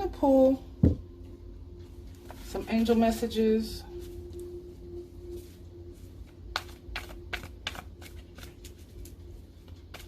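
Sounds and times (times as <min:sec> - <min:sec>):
cards being shuffled: 0:06.5 - 0:10.0.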